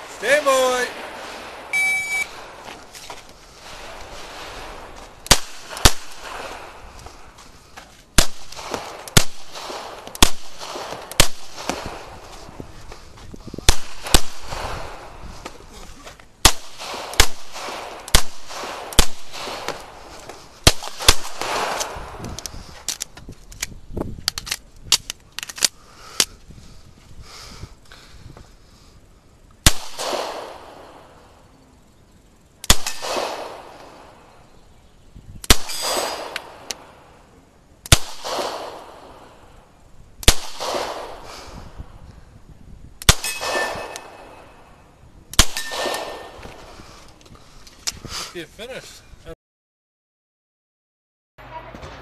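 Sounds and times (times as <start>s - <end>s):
pistol shots: 5.2s - 6.6s, 8.2s - 12.1s, 13.7s - 14.8s, 16.4s - 20.0s, 20.6s - 22.0s, 29.6s - 31.0s, 32.6s - 34.1s, 35.4s - 36.9s, 37.8s - 39.3s, 40.2s - 41.3s, 43.0s - 44.6s, 45.4s - 46.5s.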